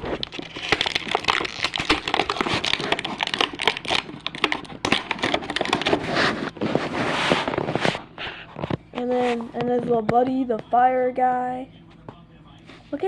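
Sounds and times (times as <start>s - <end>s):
plastic toy parts clicking and crinkling: 0.1s - 6.0s.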